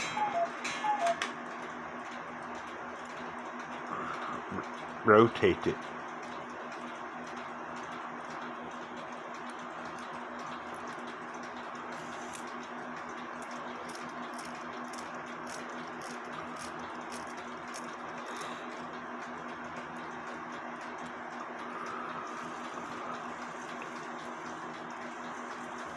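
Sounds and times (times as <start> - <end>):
steady low hum: 8.6 - 25.9.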